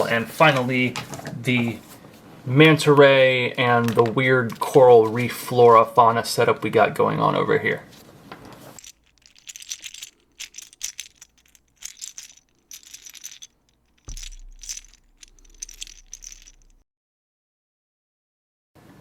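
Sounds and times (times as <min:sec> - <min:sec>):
plastic toy bricks clicking: 0:08.8 - 0:16.8.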